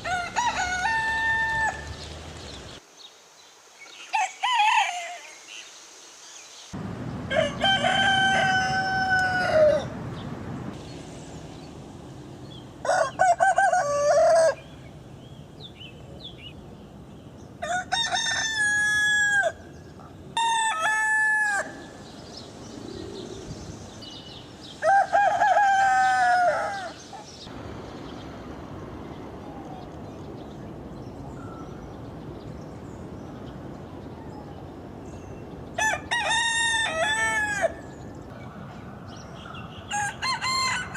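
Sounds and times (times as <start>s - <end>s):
rooster crowing: 0.0s - 2.1s, 4.1s - 5.3s, 7.3s - 9.9s, 12.8s - 14.7s, 17.6s - 19.6s, 20.4s - 22.0s, 24.8s - 27.1s, 35.8s - 37.9s, 39.9s - 40.9s.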